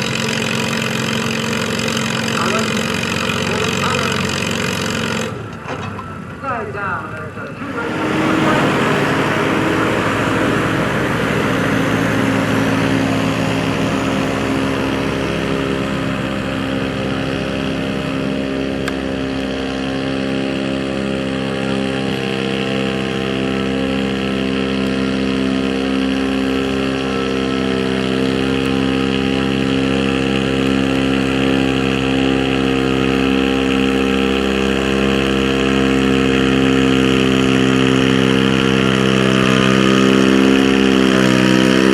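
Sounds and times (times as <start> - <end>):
tractor diesel engine running: 0.0 - 41.9.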